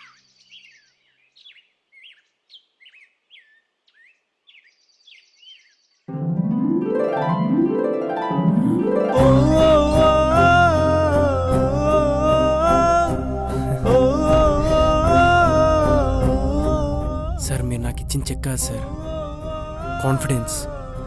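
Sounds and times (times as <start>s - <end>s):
small birds chirping: 0.0s - 6.1s
background music with plucked runs: 6.1s - 21.0s.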